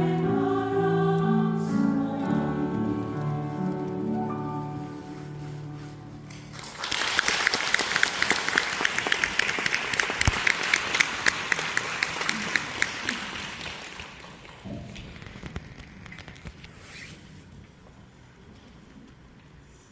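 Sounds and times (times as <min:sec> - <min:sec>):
choir holding a chord: 0:00.0 - 0:05.7
audience applauding: 0:06.3 - 0:15.5.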